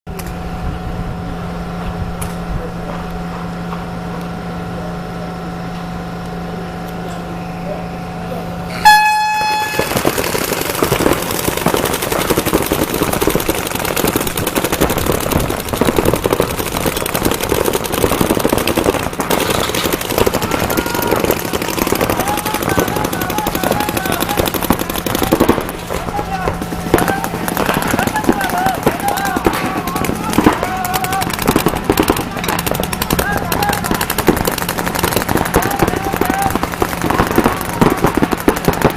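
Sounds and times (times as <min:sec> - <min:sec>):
steady low hum: 0:00.1 - 0:38.9
crowd noise: 0:04.6 - 0:38.9
loud horn blast: 0:08.7 - 0:10.0
fast rattling clatter: 0:09.4 - 0:38.9
voices calling out: 0:19.6 - 0:38.3.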